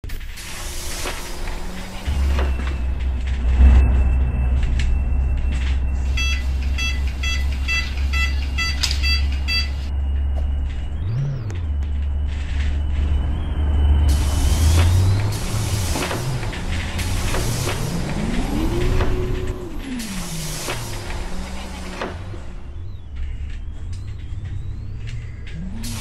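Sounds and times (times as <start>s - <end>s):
bus engine idling: 0.5s - 13.1s
electronic beeps: 1.7s - 20.0s, 22.6s - 26.0s.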